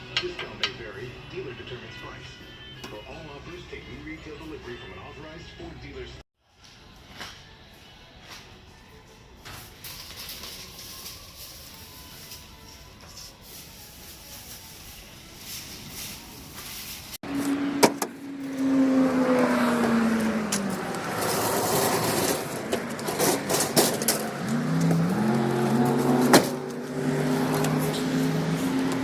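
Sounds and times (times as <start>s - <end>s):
diesel pickup engine shifting gears: 17.2s - 29.0s.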